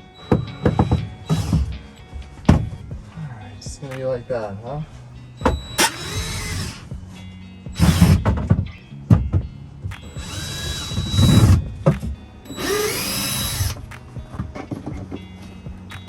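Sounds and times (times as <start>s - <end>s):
power drill backing out screws: 0.0s - 2.8s, 5.4s - 6.9s, 7.8s - 8.4s, 10.0s - 13.9s
knocks and clunks: 0.2s - 3.2s, 4.8s - 6.9s, 7.8s - 15.2s.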